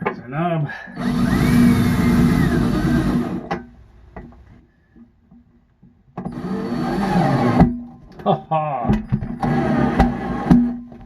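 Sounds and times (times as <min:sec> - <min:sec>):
cordless drill whirring: 0:01.0 - 0:03.6, 0:06.2 - 0:07.8, 0:09.3 - 0:10.7.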